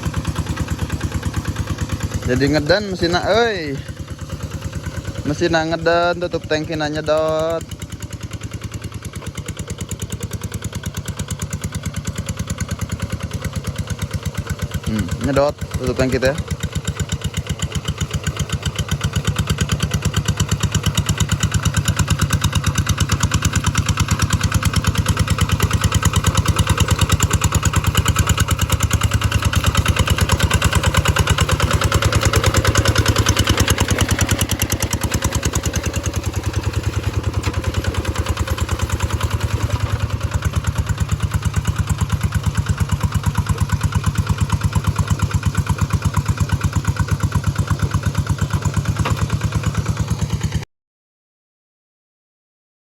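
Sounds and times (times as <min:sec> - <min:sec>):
engine running: 0:00.0 - 0:50.6
person talking: 0:02.2 - 0:03.9, 0:05.2 - 0:07.6, 0:14.9 - 0:16.4.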